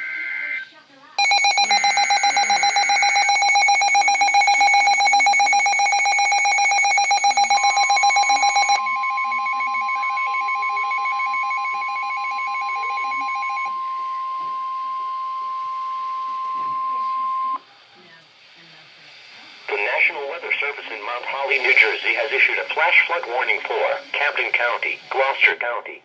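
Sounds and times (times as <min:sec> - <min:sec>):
rapidly pulsing alarm tone: 0:01.2 - 0:17.6.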